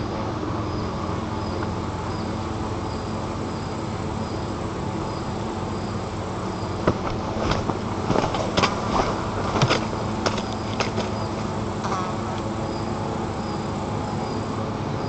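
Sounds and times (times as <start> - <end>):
outdoor background noise: 0.0 - 15.0
eaglets knocking on nest sticks: 6.8 - 12.0.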